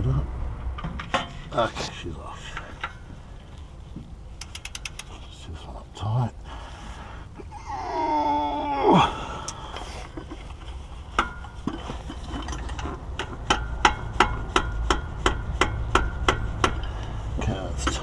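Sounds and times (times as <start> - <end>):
wrench sharp metallic clicks: 4.4 - 5.1.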